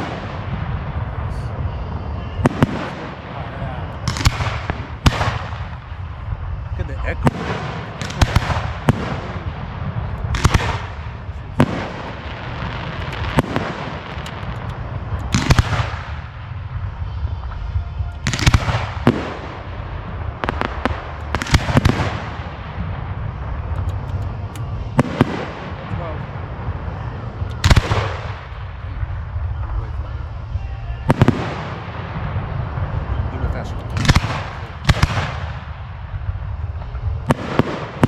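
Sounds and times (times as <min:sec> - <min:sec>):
fireworks booming: 0:00.0 - 0:38.0
low rumble: 0:00.0 - 0:38.0.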